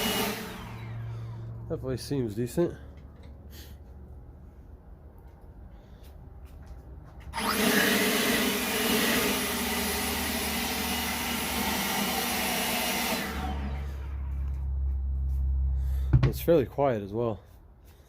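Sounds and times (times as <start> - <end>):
leaf blower spinning down: 0.0 - 1.6, 7.4 - 14.6
leaf blower whirring: 0.0 - 1.6, 7.3 - 14.7.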